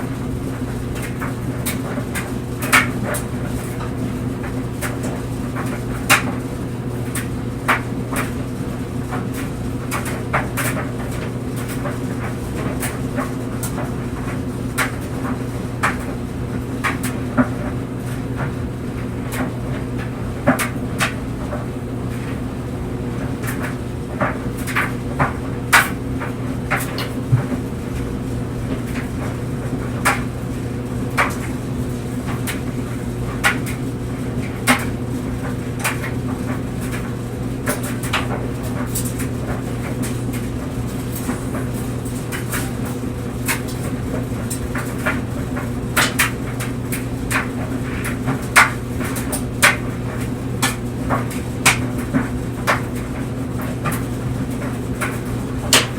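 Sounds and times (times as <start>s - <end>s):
clothes dryer motor hum: 0.0s - 55.9s
clothes knocking in dryer drum: 0.0s - 55.9s.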